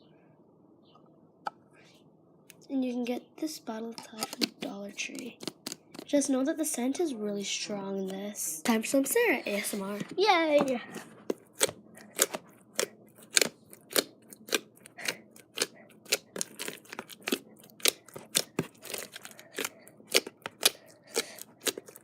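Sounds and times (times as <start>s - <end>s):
slime squished by hand: 11.3s - 22.0s.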